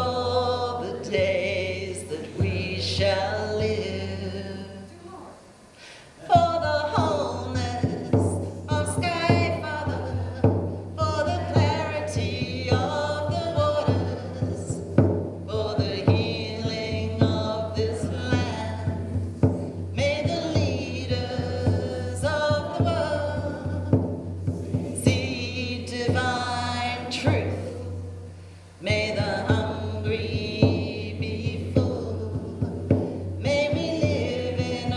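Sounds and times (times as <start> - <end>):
person singing a chant: 0.0 - 4.8, 6.2 - 19.2, 20.0 - 28.1, 28.8 - 34.9.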